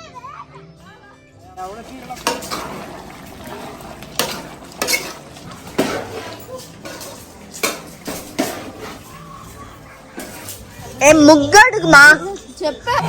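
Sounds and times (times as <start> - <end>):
hard objects clinking and knocking: 1.6 - 10.8.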